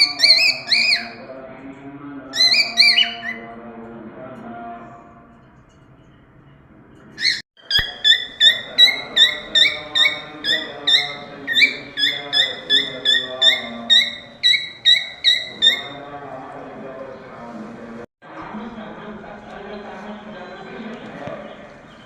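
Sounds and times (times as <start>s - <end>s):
cockatiel whistling: 0.0s - 1.2s, 2.4s - 3.4s, 7.2s - 16.0s.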